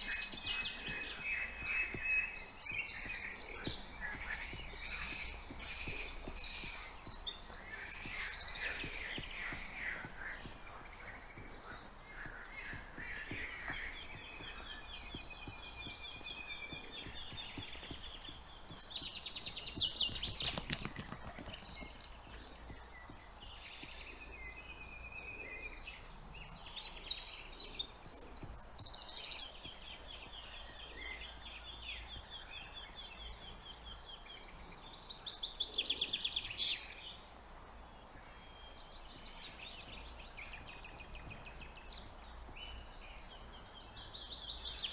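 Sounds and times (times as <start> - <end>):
birds chirping: 0.0 - 44.9
songbird trilling: 0.0 - 44.9.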